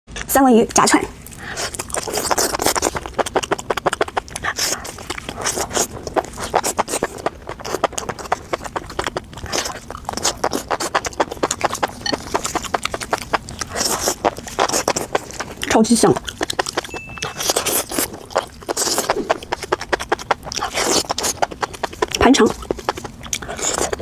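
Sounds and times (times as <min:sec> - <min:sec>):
chewing crunchy fried food: 0:00.1 - 0:24.0.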